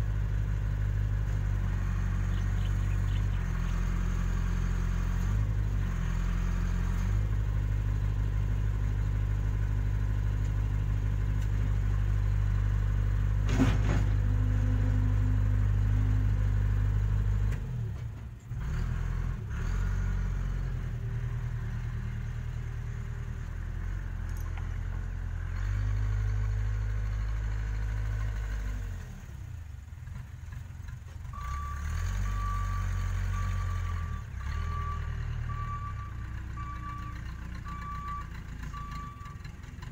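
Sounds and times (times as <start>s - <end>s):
diesel engine working: 0.0s - 39.9s
reversing alarm beeping: 31.4s - 39.4s.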